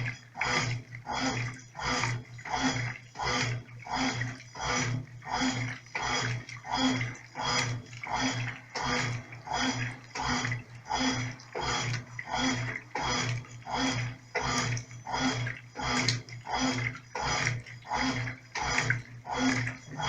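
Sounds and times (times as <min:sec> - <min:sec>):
washing machine agitator swishing water: 0:00.0 - 0:20.0
washing machine motor hum: 0:00.0 - 0:20.0.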